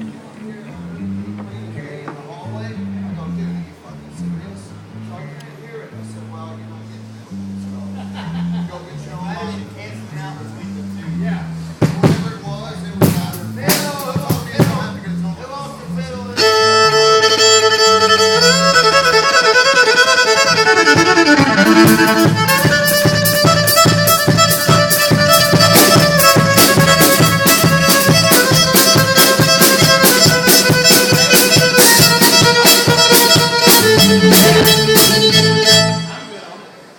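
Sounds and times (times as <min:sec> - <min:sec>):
bass line: 0:00.0 - 0:36.4
fiddle playing country tune: 0:00.0 - 0:36.7
steady drum beat: 0:11.7 - 0:15.4, 0:16.4 - 0:36.1.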